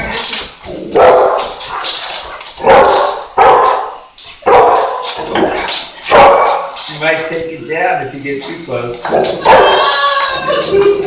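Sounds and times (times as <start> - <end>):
dog barking: 0.8 - 5.2, 6.1 - 6.8, 9.1 - 10.6.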